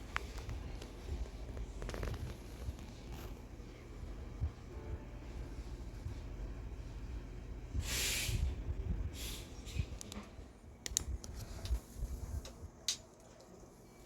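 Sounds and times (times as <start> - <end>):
short hiss: 7.8 - 8.4.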